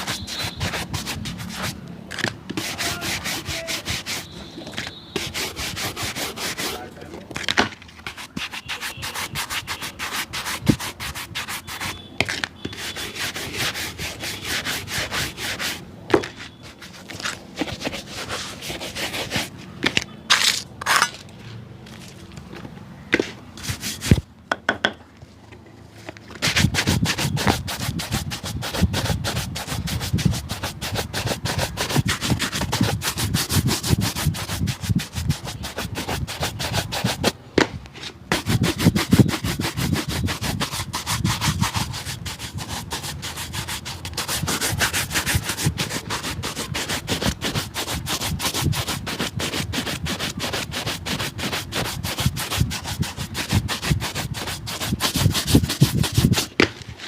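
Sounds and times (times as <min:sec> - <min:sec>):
rubbing strokes on a shoe: 0:00.0 - 0:01.8, 0:02.5 - 0:07.1, 0:08.0 - 0:20.5, 0:23.6 - 0:24.2, 0:26.4 - 0:37.4, 0:38.0 - 0:57.0
sharp knocks: 0:24.5 - 0:25.0.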